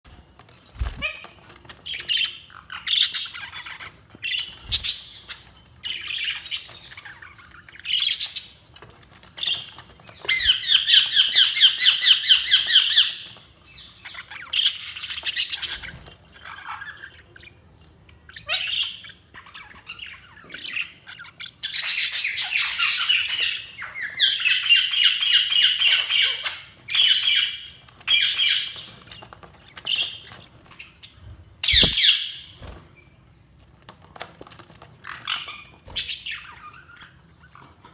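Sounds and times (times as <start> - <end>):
budgerigars chirping and warbling: 0.8 - 32.8, 34.1 - 37.9.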